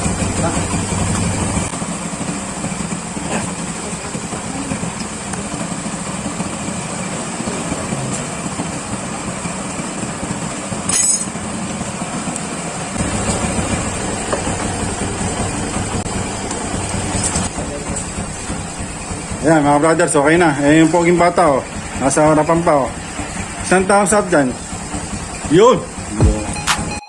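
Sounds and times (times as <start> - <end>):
motorcycle engine idling: 0.0 - 27.0
short metallic clink: 10.9 - 11.4.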